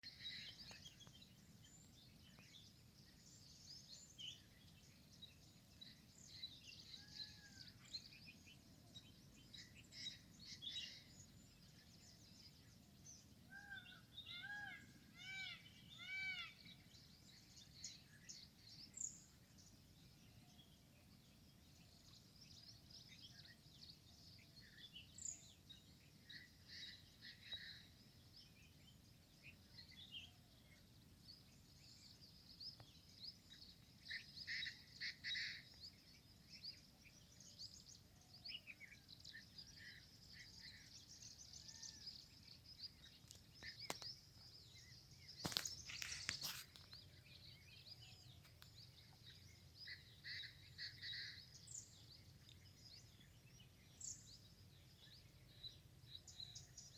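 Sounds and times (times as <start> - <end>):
birds chirping: 31.4 - 54.4.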